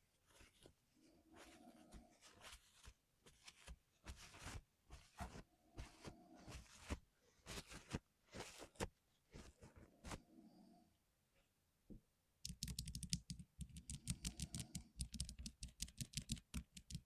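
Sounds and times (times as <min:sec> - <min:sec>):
clicks and taps of parts: 0:12.4 - 0:17.0.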